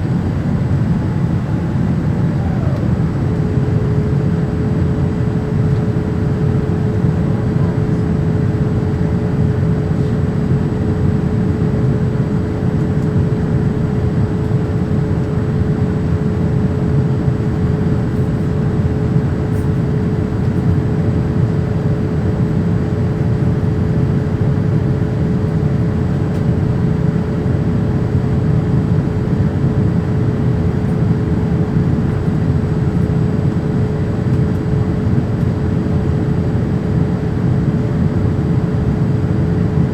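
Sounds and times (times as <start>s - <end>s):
steady hum: 0.0s - 7.9s, 28.6s - 39.9s
jet engines droning: 0.0s - 20.4s, 26.6s - 39.9s.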